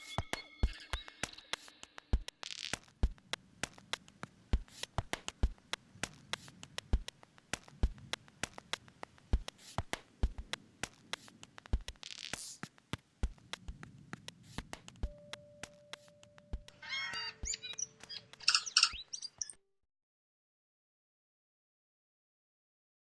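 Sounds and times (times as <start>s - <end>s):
sparse electronic music: 0.0s - 2.7s, 15.0s - 19.4s.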